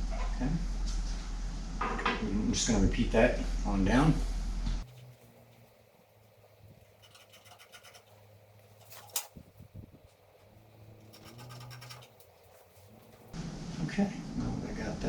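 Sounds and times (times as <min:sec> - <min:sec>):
scribe scraping metal: 0:04.8 - 0:05.8, 0:06.4 - 0:13.4.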